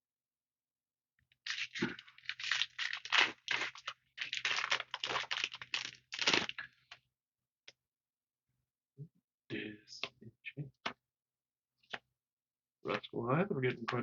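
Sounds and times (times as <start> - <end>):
foil wrapper crinkling: 1.4 - 6.6.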